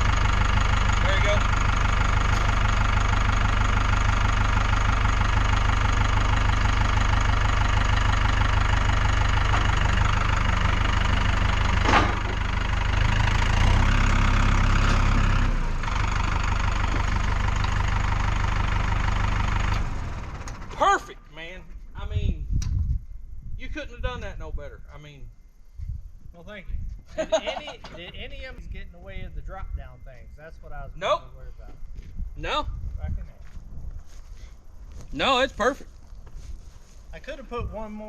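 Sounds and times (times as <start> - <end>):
tractor engine idling: 0.0 - 21.6.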